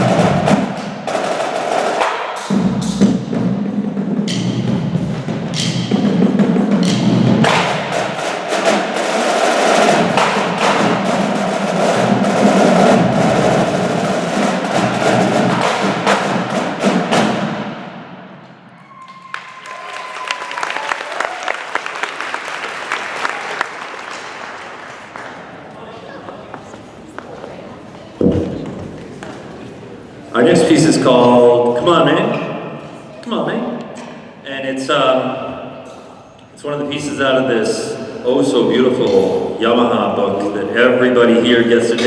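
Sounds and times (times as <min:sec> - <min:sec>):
percussion ensemble playing: 0:00.0 - 0:18.1
audience applause: 0:18.8 - 0:27.2.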